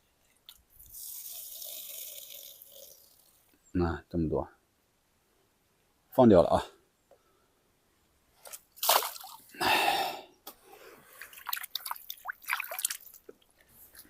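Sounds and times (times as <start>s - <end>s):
fish splashing into water: 8.8s - 9.5s, 11.2s - 13.2s
water dripping and trickling: 11.1s - 13.5s.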